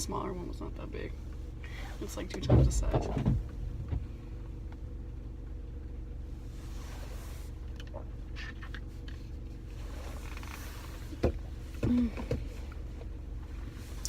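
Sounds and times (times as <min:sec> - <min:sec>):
car cabin hum: 0:00.0 - 0:14.0.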